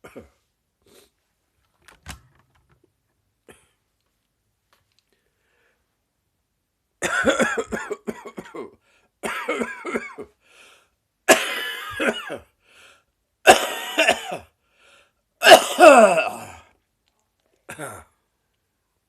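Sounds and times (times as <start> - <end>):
person coughing: 0.0 - 0.4, 7.0 - 10.4, 11.3 - 12.5, 13.5 - 14.5, 15.4 - 16.7, 17.7 - 18.2.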